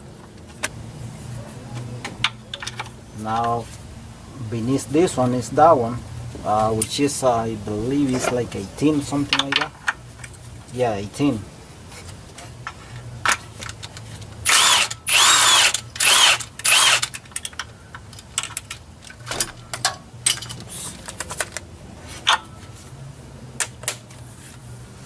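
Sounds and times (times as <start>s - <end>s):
impact wrench whining: 14.4s - 17.2s.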